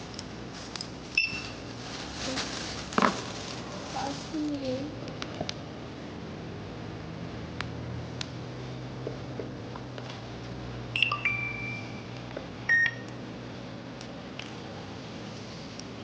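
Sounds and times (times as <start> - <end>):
low steady hum: 0.0 - 16.0
electronic checkout beeps: 1.2 - 1.6, 11.0 - 13.2.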